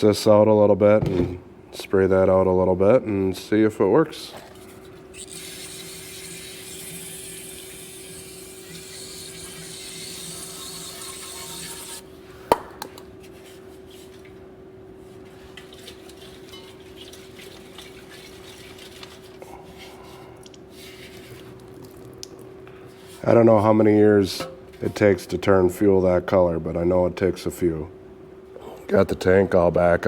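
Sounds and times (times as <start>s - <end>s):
faint steady hum: 0.0s - 30.0s
spray hissing into tank: 5.2s - 12.0s.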